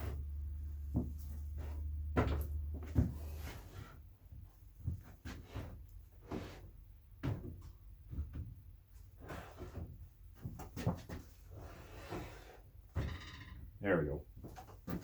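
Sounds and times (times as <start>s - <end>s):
handling knocks and bumps: 0.0s - 5.9s, 7.2s - 8.7s, 14.4s - 15.0s.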